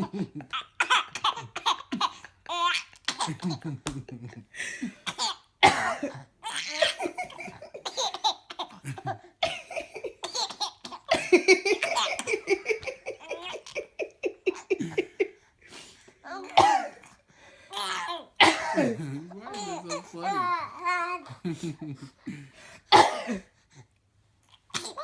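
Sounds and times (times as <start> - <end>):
woman coughing: 5.1 - 8.3, 9.4 - 10.4, 11.1 - 12.5, 16.5 - 17.0, 18.4 - 20.2, 23.0 - 23.5
babies laughing: 6.4 - 15.3.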